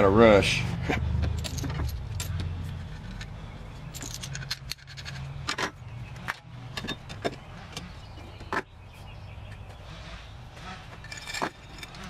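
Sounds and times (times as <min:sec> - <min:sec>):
metallic clinks of hand tools: 0:11.0 - 0:12.0.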